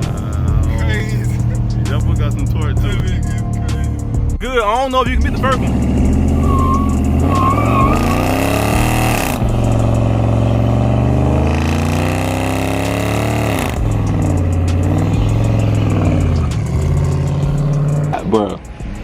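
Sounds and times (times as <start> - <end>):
car engine accelerating through gears: 5.0 - 19.0.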